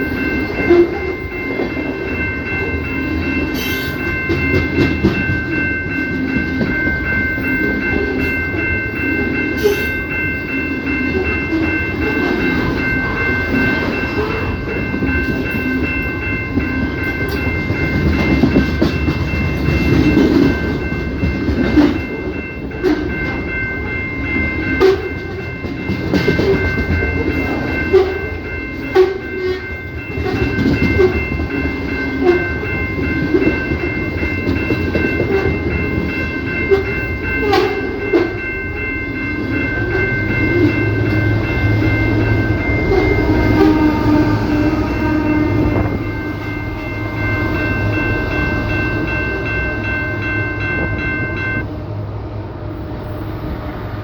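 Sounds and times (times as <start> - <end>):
train railcars rumbling: 0.0 - 54.0.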